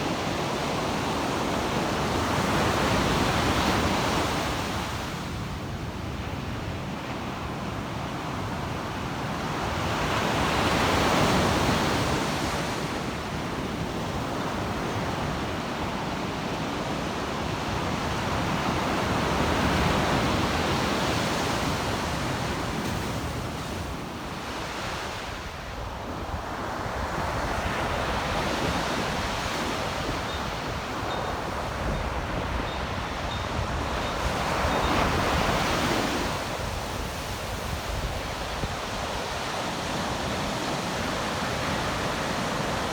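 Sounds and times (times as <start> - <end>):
ocean surf washing onto beach: 17.7 - 42.9.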